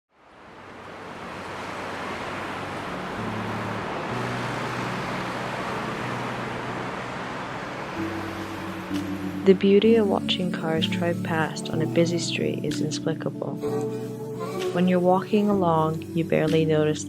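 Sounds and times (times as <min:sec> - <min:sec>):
passing cars: 0:00.1 - 0:17.0
quiet low music: 0:01.5 - 0:17.0.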